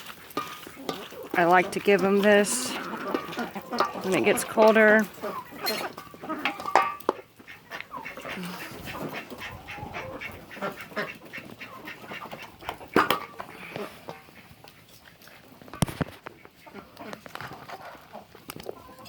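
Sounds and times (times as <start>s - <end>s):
poultry calling: 0.4s - 15.5s
ducks quacking: 0.4s - 18.4s.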